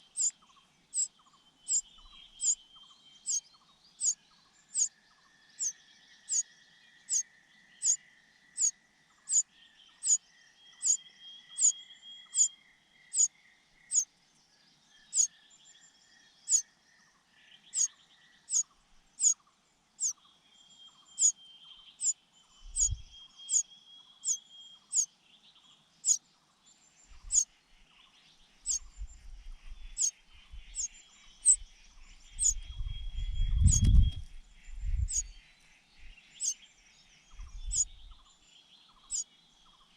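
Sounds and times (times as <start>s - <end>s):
young birds begging calls: 0.0s - 0.3s, 1.7s - 2.6s, 4.0s - 4.9s, 22.7s - 23.6s, 24.2s - 25.1s, 28.6s - 28.8s, 29.8s - 31.6s, 32.3s - 34.0s, 35.0s - 35.3s, 37.6s - 38.0s
rumble: 32.0s - 35.3s.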